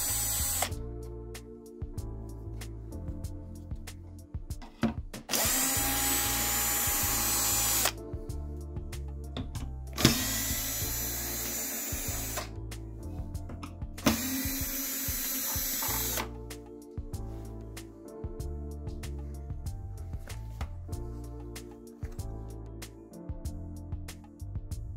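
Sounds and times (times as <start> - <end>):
electric screwdriver running: 0.0 - 0.7, 5.3 - 8.0, 10.0 - 12.5, 14.0 - 16.3
background music: 0.0 - 24.9.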